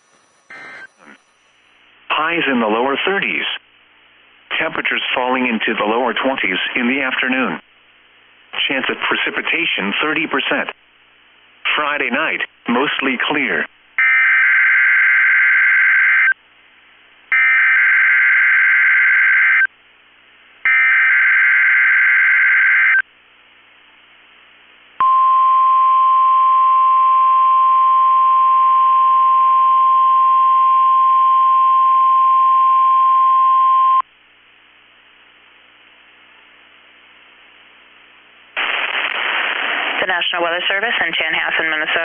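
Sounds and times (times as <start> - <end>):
steady high warning tone: 0.0 - 1.9
faint radio hiss: 0.0 - 14.0, 23.0 - 25.0, 34.0 - 42.0.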